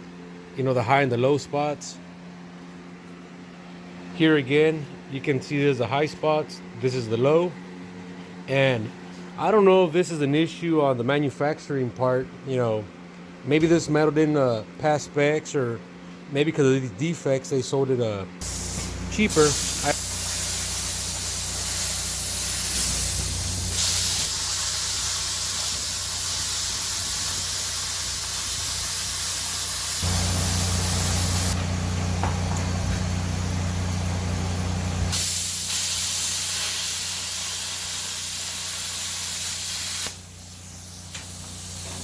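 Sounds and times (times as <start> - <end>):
steady rushing hiss: 18.4 - 31.6, 35.1 - 42.0.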